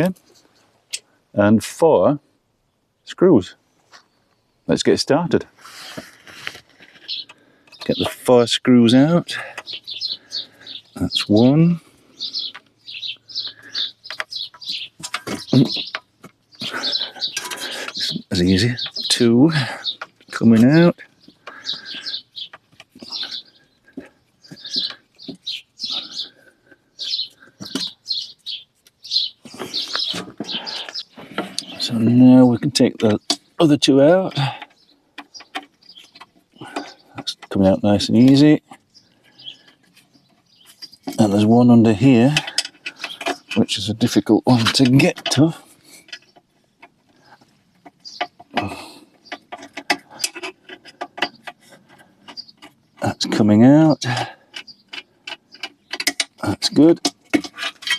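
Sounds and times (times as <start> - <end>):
bird chirping and singing: 6.9 - 57.9.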